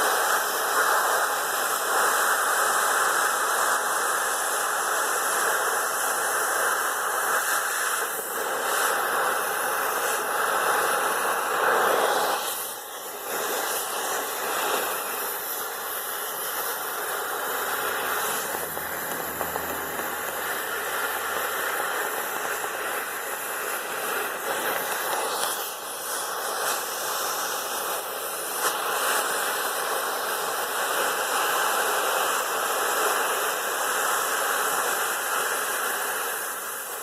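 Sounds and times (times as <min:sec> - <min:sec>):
cutting torch hissing: 0:00.0 - 0:37.0.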